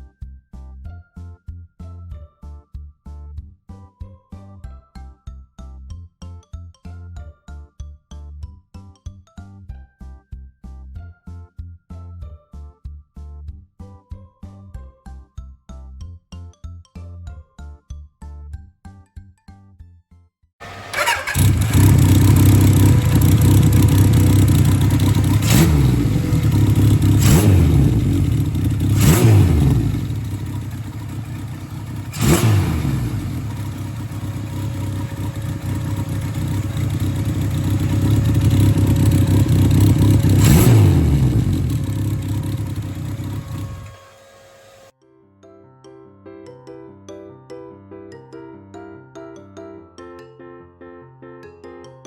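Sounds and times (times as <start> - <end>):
motorcycle engine revving: 20.6 - 44.9.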